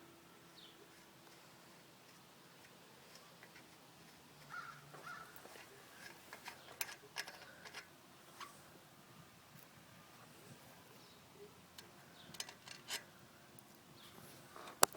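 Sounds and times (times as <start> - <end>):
wrench clicking on axle nut: 11.8 - 13.0.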